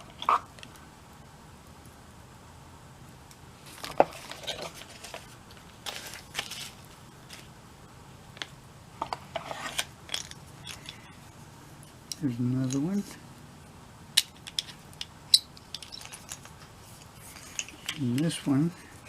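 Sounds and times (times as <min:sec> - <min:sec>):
hand drill clicking and clinking: 0:14.2 - 0:16.5.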